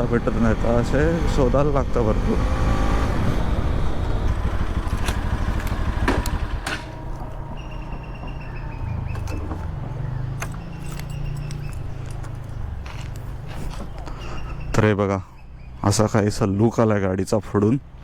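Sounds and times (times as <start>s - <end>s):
motorcycle engine idling: 0.0s - 14.8s.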